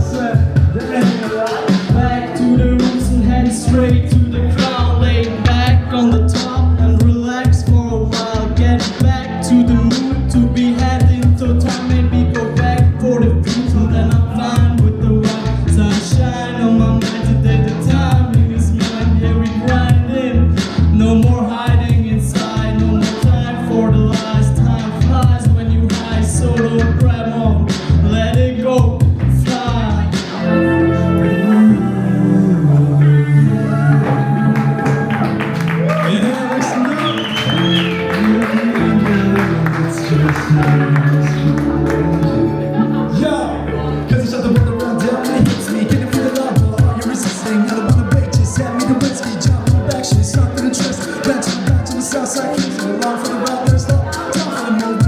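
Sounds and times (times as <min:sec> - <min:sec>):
hip-hop beat with heavy bass: 0:00.0 - 0:30.5, 0:44.1 - 0:55.0
person singing: 0:00.0 - 0:55.0.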